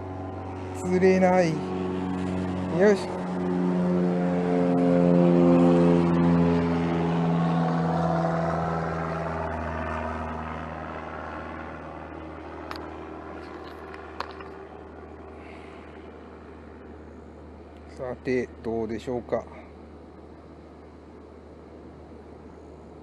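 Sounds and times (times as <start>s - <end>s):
passing vehicle engine: 0.0s - 18.0s.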